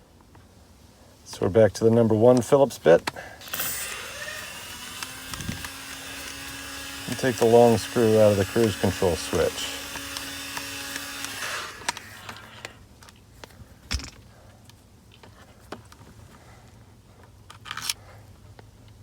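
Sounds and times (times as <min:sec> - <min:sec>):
parts clicking and knocking: 0:02.3 - 0:14.3
powered screwdriver running: 0:03.4 - 0:12.8.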